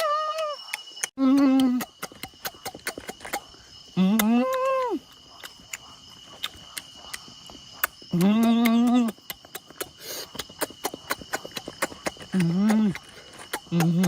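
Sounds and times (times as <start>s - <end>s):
high insect tone: 0.0s - 14.0s
sharp clicks: 0.4s - 3.5s.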